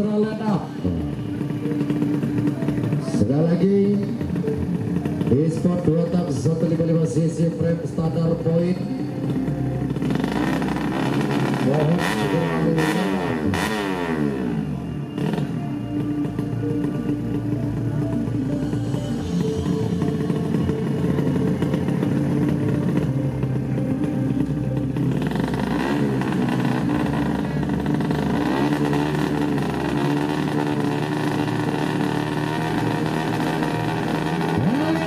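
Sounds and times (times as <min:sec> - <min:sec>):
motorcycle engines revving: 0:00.0 - 0:35.0.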